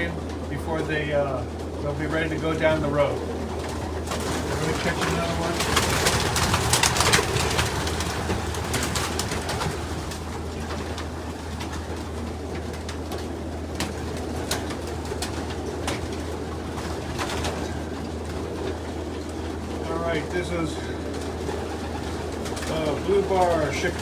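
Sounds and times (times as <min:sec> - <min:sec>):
pigeons cooing: 0:00.0 - 0:24.0
steady low hum: 0:00.0 - 0:24.0
sharp clicks and rustles: 0:03.2 - 0:19.4.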